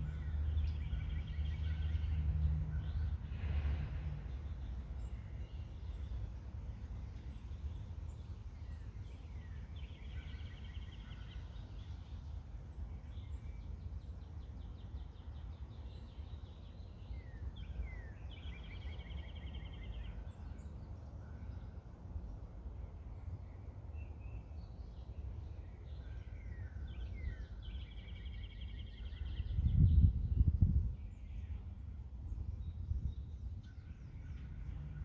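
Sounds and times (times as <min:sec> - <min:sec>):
low outdoor rumble: 0:00.0 - 0:07.0.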